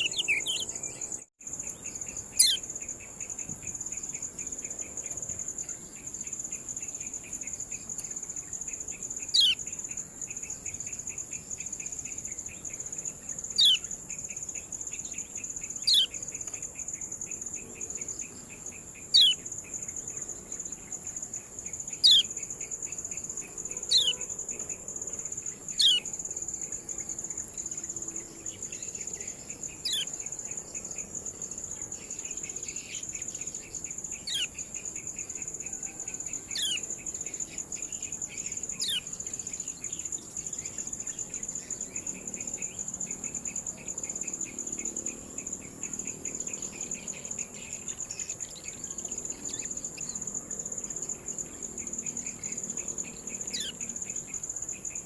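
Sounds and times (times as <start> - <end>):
insect trill: 0.0 - 55.0
bird giving sharp calls: 2.4 - 2.6, 23.9 - 24.2.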